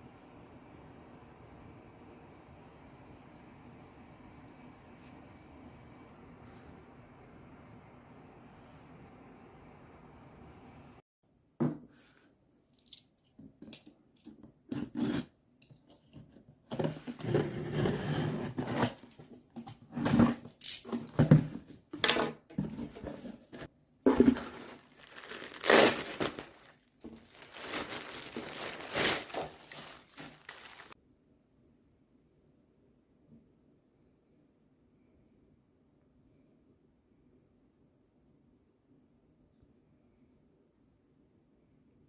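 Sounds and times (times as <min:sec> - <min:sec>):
tearing and crinkling: 0:24.1 - 0:31.0.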